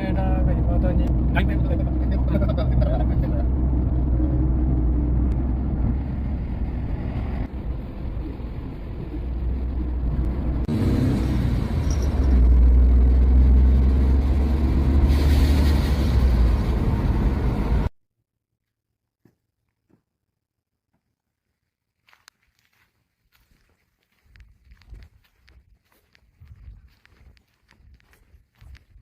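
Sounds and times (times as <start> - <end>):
car engine and road noise: 0.0 - 17.9.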